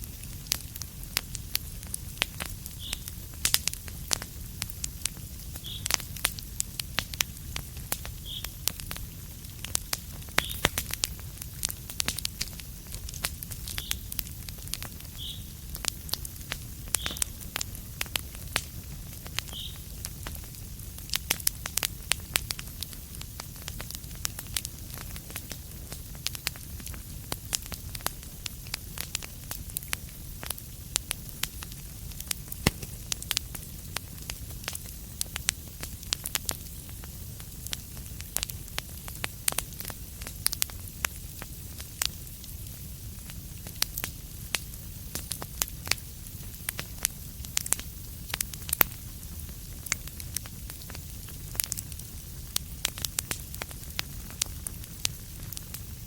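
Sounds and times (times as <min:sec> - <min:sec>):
wood fire crackling and popping: 0:00.0 - 0:56.0.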